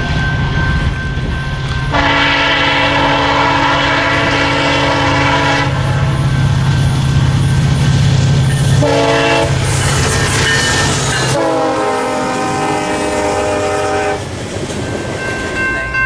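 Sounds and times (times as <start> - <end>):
train rumbling and clacking: 0.0 - 16.0
locomotive air horn blasts: 1.9 - 6.4, 8.6 - 14.3.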